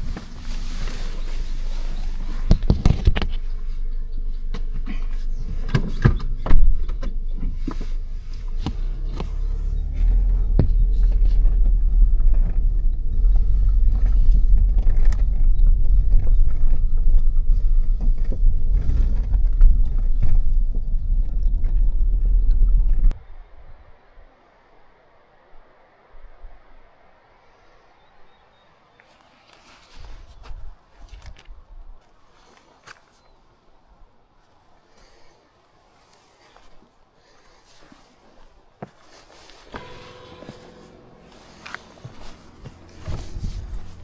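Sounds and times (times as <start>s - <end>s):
wind buffeting microphone: 8.3s - 24.1s, 42.5s - 44.0s
footsteps and handling knocks: 38.8s - 44.0s.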